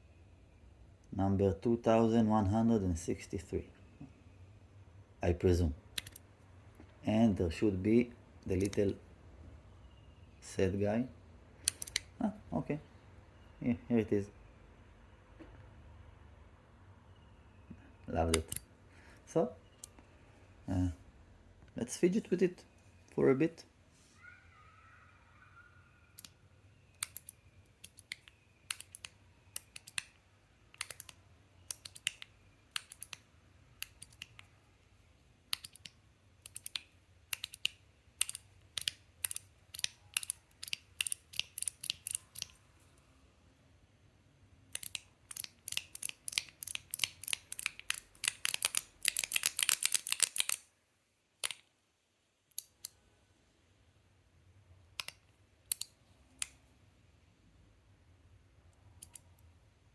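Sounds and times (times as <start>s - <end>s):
metallic fidget toy clicks: 11.6s - 12.1s, 27.0s - 33.2s, 35.5s - 42.6s, 44.7s - 50.7s, 55.0s - 56.6s.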